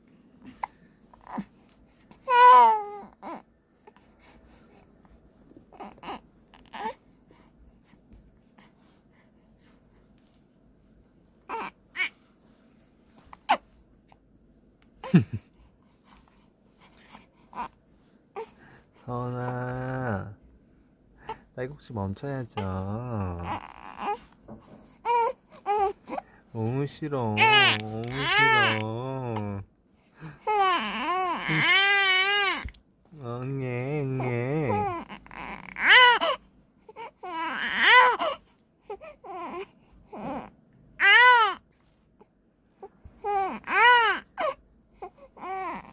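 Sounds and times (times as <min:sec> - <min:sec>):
newborn baby crying: 0:02.1 - 0:03.5, 0:05.7 - 0:07.0, 0:11.5 - 0:12.2, 0:22.5 - 0:26.2, 0:27.2 - 0:29.6, 0:30.4 - 0:32.8, 0:33.9 - 0:41.6, 0:42.8 - 0:45.9.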